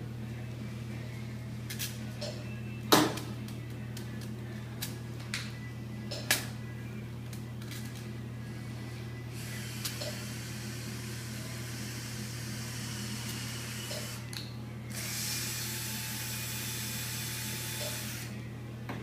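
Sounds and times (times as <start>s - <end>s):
low electrical hum: 0.0s - 19.0s
surgical power drill running: 9.4s - 14.3s, 14.9s - 18.3s.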